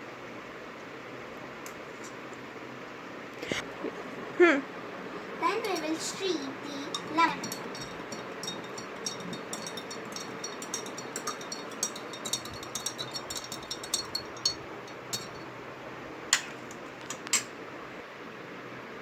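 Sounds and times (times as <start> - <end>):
spoon clinking against glass: 5.6 - 15.5.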